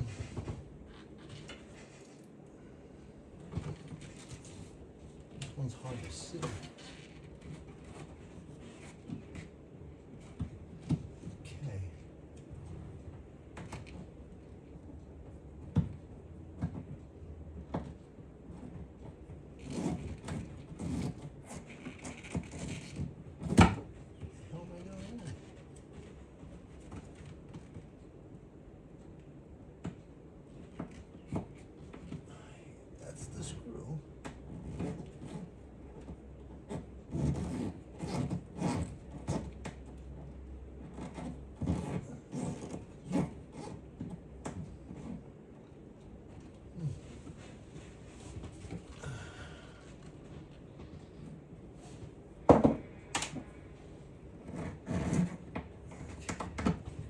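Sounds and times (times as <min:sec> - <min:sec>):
rustling and scraping: 0:00.0 - 0:32.3, 0:33.1 - 0:57.0
rubbing and scraping: 0:18.0 - 0:28.0, 0:33.7 - 0:45.3, 0:54.3 - 0:57.0.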